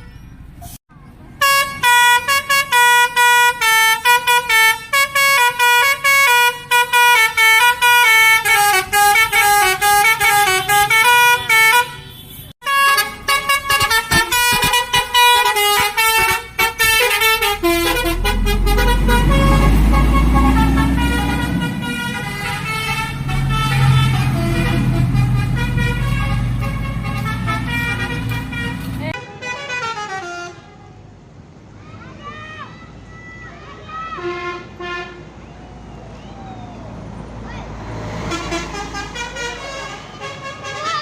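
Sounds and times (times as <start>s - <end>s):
musical bus horn tune: 1.4s - 31.0s, 34.2s - 35.3s, 38.2s - 41.0s
low engine rumble rising: 17.1s - 29.2s.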